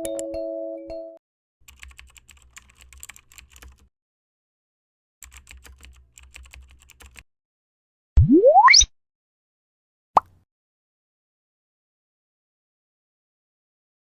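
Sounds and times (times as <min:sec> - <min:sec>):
computer keyboard typing: 0:01.7 - 0:03.9, 0:05.2 - 0:07.2.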